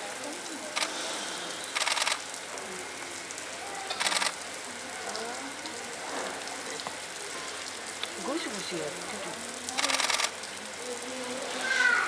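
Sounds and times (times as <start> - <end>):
crowd murmuring: 2.5 - 12.0.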